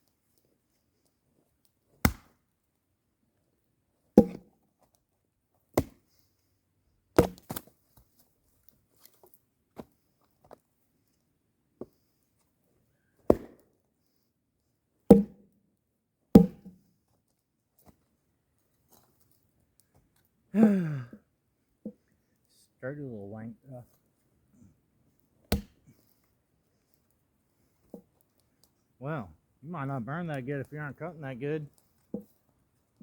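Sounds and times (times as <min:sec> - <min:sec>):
firewood being chopped: 0:02.0 - 0:02.4, 0:04.2 - 0:04.5, 0:05.7 - 0:06.0, 0:07.2 - 0:07.7, 0:13.2 - 0:13.6, 0:15.1 - 0:15.4, 0:16.4 - 0:16.8, 0:25.4 - 0:25.8.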